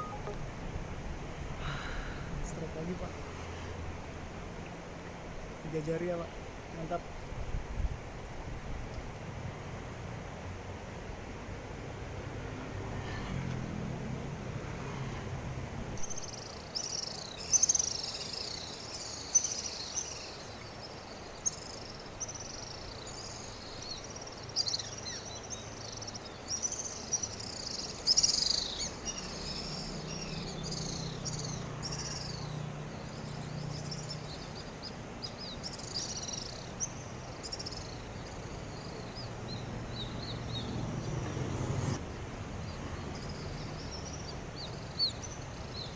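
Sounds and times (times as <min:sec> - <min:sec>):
birds chirping: 0:00.0 - 0:00.5, 0:15.9 - 0:45.9.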